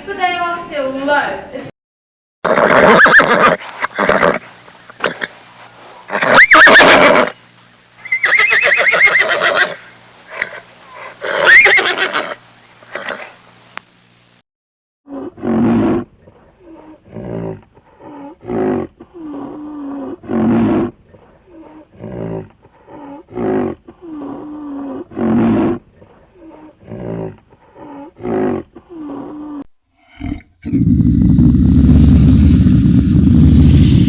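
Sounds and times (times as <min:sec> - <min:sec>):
big cat roaring: 0:15.1 - 0:16.1, 0:17.0 - 0:20.9, 0:21.9 - 0:25.8, 0:26.5 - 0:34.0.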